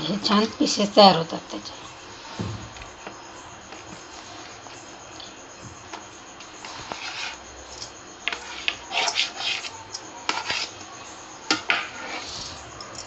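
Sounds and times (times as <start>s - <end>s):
knife scraping on board: 6.6s - 10.8s.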